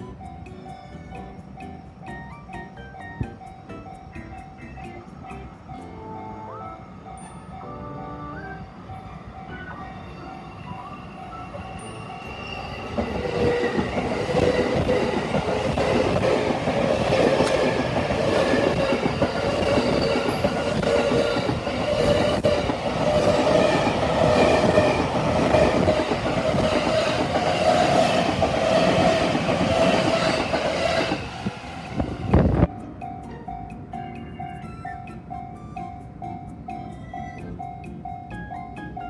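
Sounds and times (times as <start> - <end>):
level crossing warning bell: 0.0 - 39.0
wind buffeting microphone: 12.2 - 32.8
train wheels clattering over rail joints: 12.9 - 32.7.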